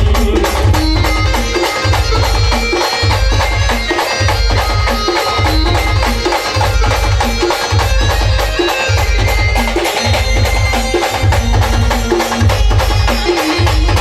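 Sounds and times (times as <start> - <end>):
heavy repeating bass: 0.0 - 1.3
band music: 0.0 - 14.0
fast drum beat: 0.0 - 14.0.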